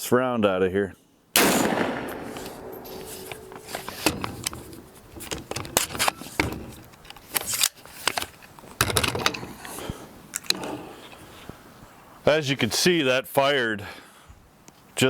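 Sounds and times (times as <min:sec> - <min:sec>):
rifle action metallic clicks: 0:01.4 - 0:06.2.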